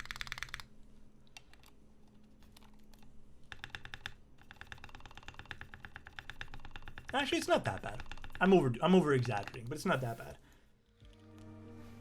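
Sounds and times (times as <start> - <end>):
mechanical keyboard typing: 0.0 - 0.7, 2.5 - 10.1.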